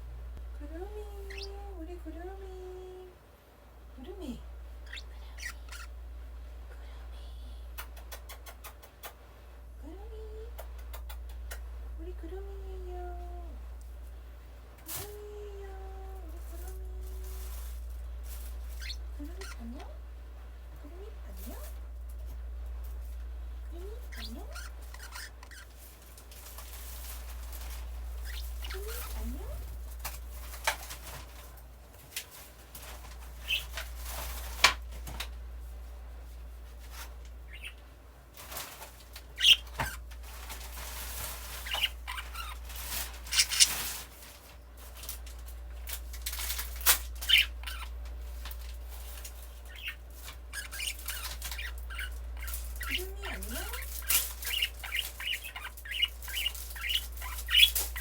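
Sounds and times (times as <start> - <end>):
budgerigar chirping: 1.2 - 1.6, 4.8 - 6.0, 18.7 - 19.7, 24.1 - 25.7, 28.2 - 29.4, 33.4 - 33.8, 37.4 - 37.8, 39.3 - 40.0, 41.6 - 43.8, 47.2 - 48.0, 49.6 - 58.0
wings fluttering: 14.8 - 19.9, 21.3 - 58.0
bird scratching and clicking: 24.1 - 35.4, 36.7 - 58.0.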